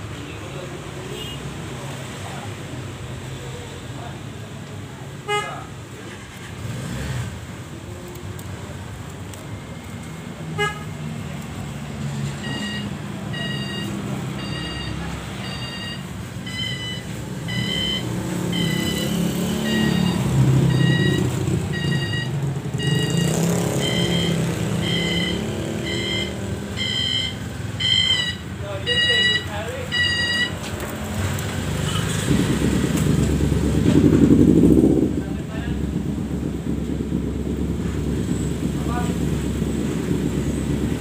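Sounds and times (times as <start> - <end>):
steady low rumble: 32.2 - 41.0.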